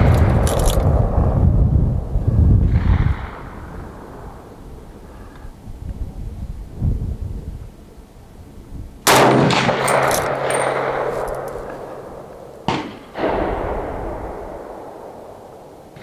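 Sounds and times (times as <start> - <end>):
rifle shots with echo: 0.0 - 1.2, 9.0 - 16.0.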